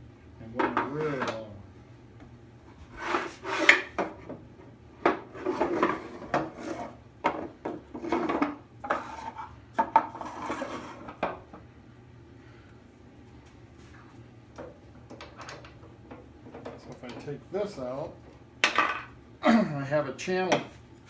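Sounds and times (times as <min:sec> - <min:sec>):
wooden drawers sliding: 0:03.0 - 0:04.0.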